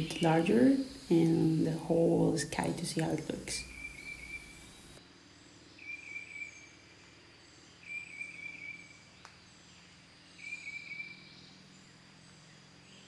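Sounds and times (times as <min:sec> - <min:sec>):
trilled bird call: 0:00.0 - 0:05.0
faint high bird chirps: 0:00.0 - 0:13.0.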